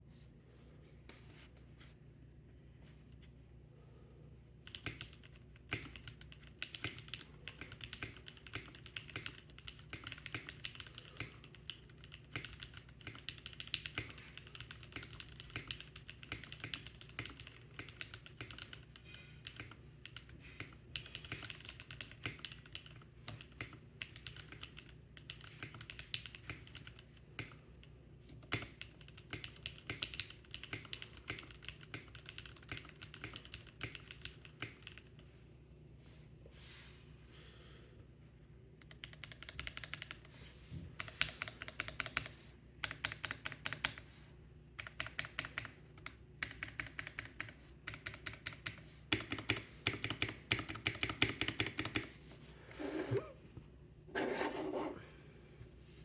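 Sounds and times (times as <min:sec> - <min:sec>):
fast typing on mechanical keyboard: 0:04.6 - 0:27.5, 0:28.5 - 0:35.1, 0:38.8 - 0:40.2, 0:41.0 - 0:44.0, 0:44.8 - 0:52.1.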